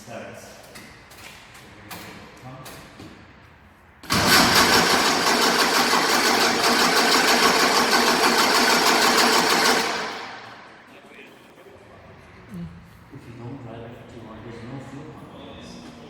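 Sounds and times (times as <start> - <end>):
car engine cranking: 4.0 - 10.4.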